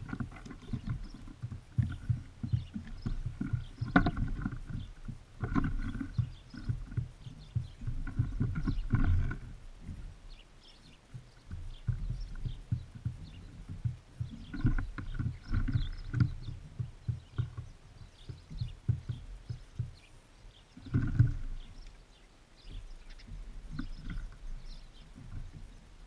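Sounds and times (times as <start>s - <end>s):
beaks tapping on bird feeder: 11.1s - 20.2s.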